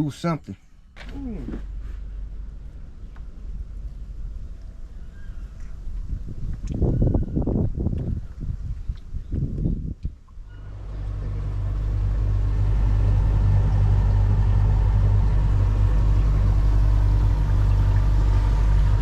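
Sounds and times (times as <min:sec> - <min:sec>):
boat motor droning: 0:10.4 - 0:19.0.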